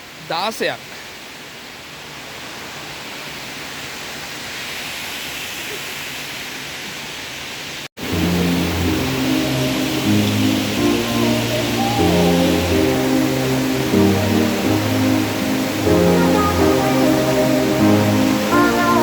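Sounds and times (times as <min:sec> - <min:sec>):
waterfall rushing: 0:00.0 - 0:19.0
music: 0:08.0 - 0:19.0.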